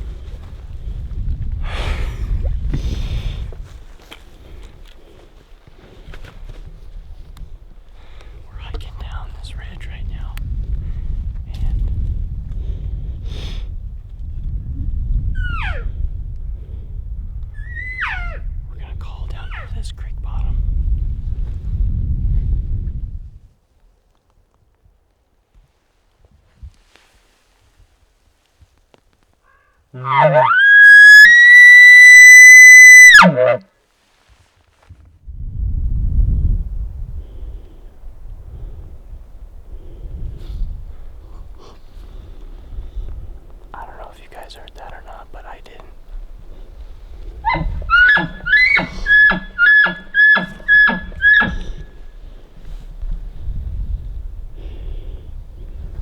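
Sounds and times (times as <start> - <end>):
elk bugling: 15.4 - 16.0, 17.6 - 18.5, 30.0 - 33.7, 41.8 - 55.0.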